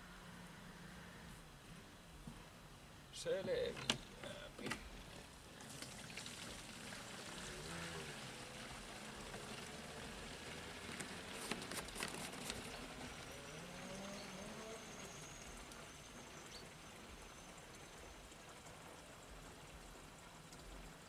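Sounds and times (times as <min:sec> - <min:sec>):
coolant pouring into container: 0:04.9 - 0:21.0.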